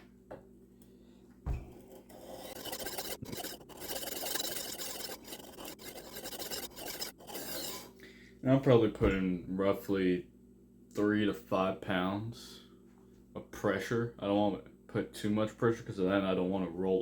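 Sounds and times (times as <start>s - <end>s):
thump: 1.4s - 1.8s
knife scraping on sharpening stone: 1.8s - 7.9s.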